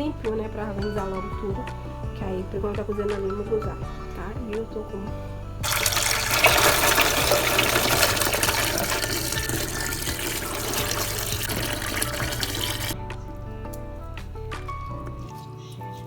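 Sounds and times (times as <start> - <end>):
water running from a tap: 5.6 - 13.0.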